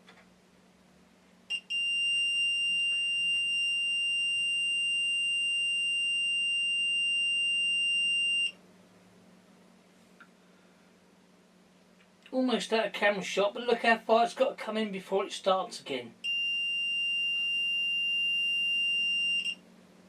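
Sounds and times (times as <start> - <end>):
continuity tester beeping: 1.5 - 8.6, 16.2 - 19.6.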